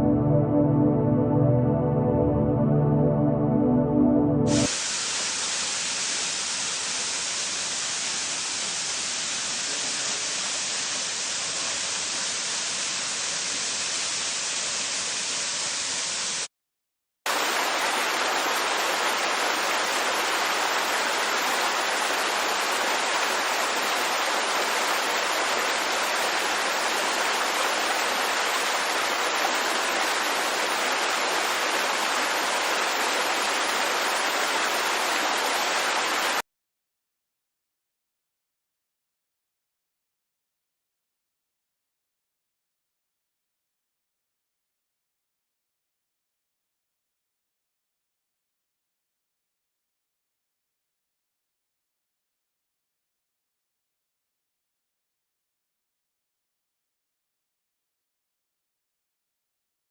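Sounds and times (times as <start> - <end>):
running water rushing: 4.5 - 16.5, 17.3 - 36.4.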